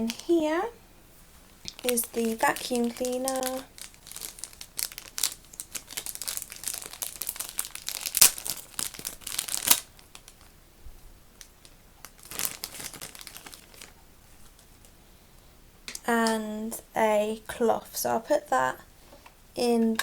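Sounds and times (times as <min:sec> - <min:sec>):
packaging crinkling and rustling: 0:01.5 - 0:10.6, 0:11.4 - 0:15.0.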